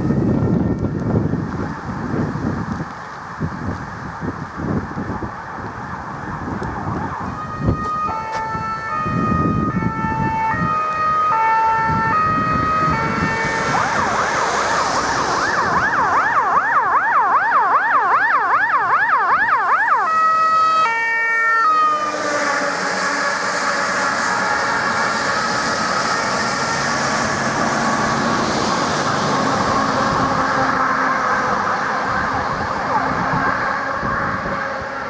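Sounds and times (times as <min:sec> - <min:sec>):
vehicle low rumble: 0:00.0 - 0:16.5
fire engine siren: 0:00.0 - 0:35.0.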